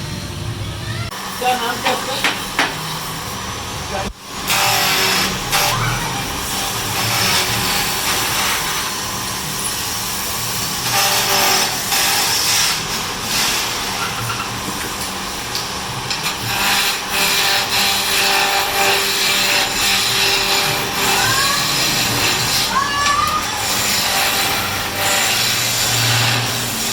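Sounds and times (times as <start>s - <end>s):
lathe motor hum: 12.4s - 26.9s
turning tool scraping wood: 16.1s - 26.9s.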